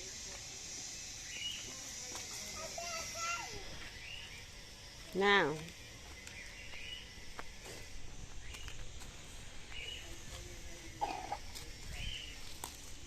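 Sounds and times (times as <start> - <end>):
bird chirps: 0.9 - 1.7, 6.1 - 7.3.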